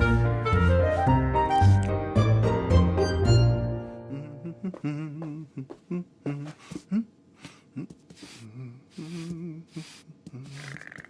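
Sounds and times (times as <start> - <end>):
breathy noises: 3.9 - 11.0.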